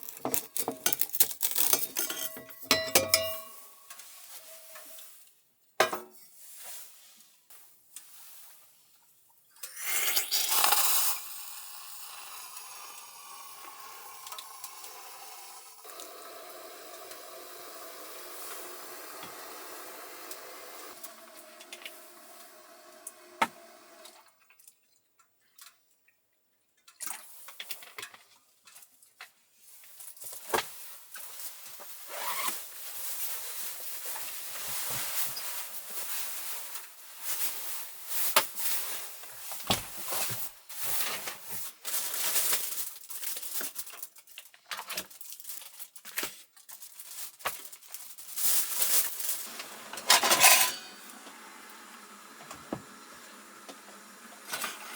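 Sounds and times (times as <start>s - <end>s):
metal pots and utensils clattering: 0.0s - 5.0s, 49.6s - 51.1s.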